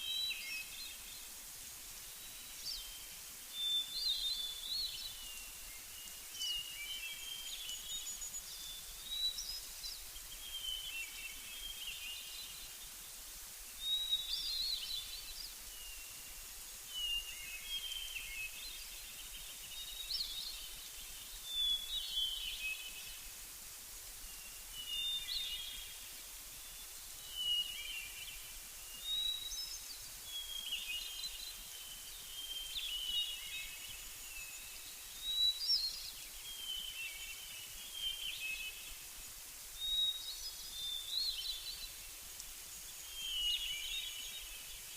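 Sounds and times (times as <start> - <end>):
faint steady hiss: 0.0 - 44.9
songbirds chirping: 0.0 - 44.9.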